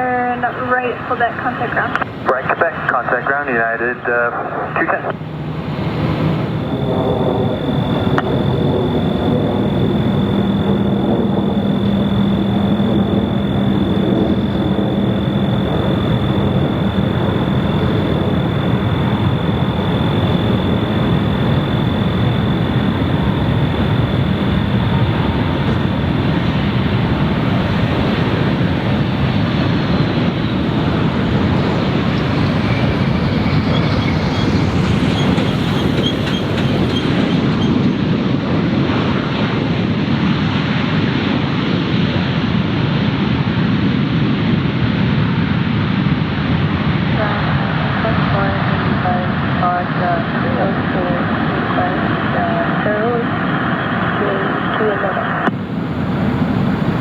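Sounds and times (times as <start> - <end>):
high engine whine: 0.0 - 57.0
jet engines running: 0.0 - 57.0
faint rising high tones: 5.2 - 37.3.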